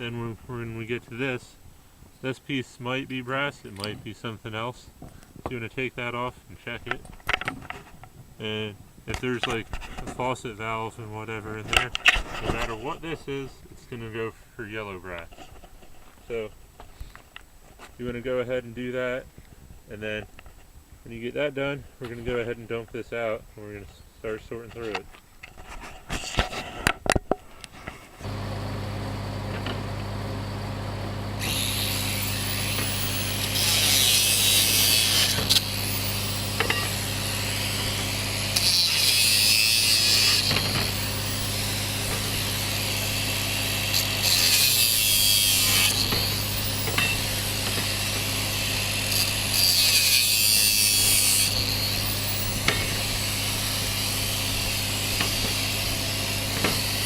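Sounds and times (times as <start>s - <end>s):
angle grinder running: 28.2s - 57.0s
grinder cutting copper pipe: 28.2s - 57.0s
metal clanks: 32.6s - 57.0s.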